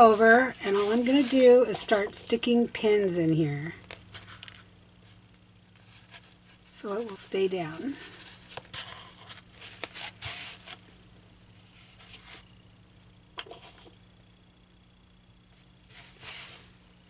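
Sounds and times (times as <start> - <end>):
fabric rustling and scraping: 0.0 - 2.1, 4.1 - 10.9, 15.5 - 16.9
faint steady hum: 0.0 - 17.0.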